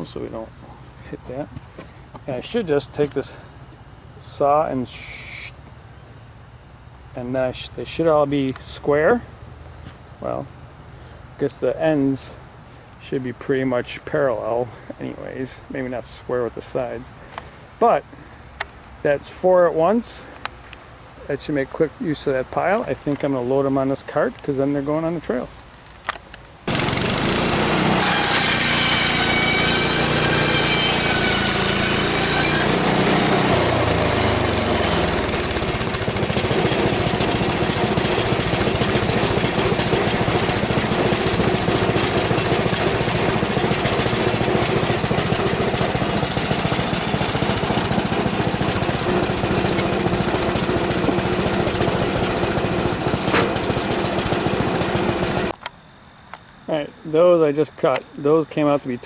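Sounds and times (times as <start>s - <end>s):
bandsaw engine and blade drone: 26.7s - 55.6s.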